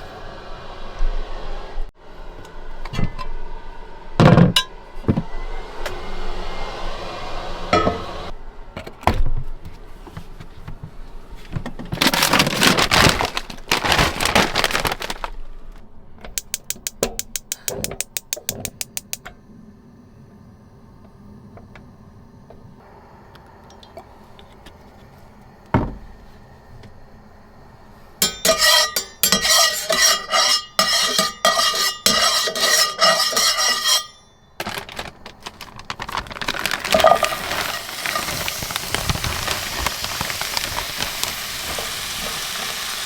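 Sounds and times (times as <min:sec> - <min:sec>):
pans and packaging clattering: 0:11.5 - 0:15.3, 0:28.2 - 0:42.8.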